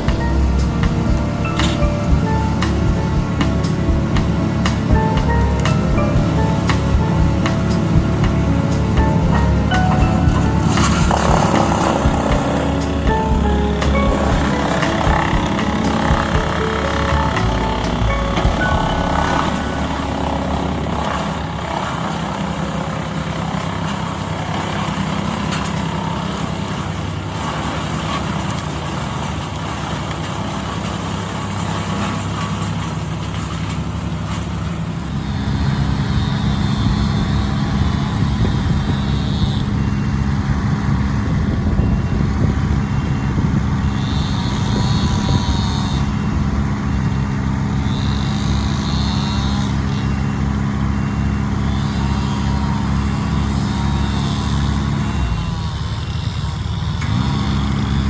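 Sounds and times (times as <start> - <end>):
high whine: 0.0 - 24.4
heavy machine engine running: 0.0 - 58.0.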